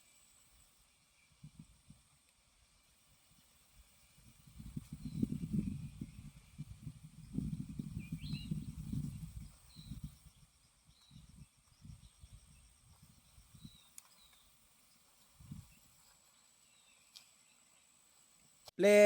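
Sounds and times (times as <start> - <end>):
bird chirps: 7.8 - 18.0.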